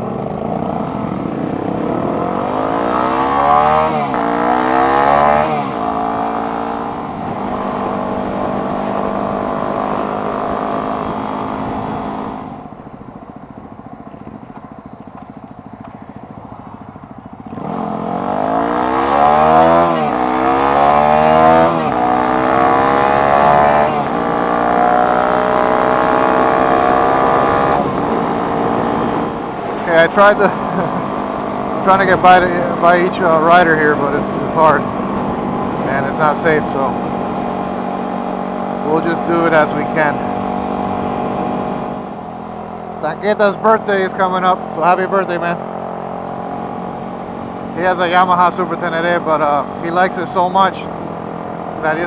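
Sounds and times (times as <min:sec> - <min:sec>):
motorcycle engine accelerating: 0:00.0 - 0:52.0.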